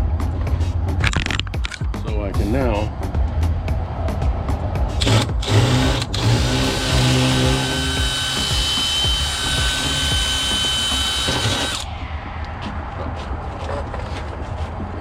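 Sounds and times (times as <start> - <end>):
power drill whining: 5.0 - 11.9.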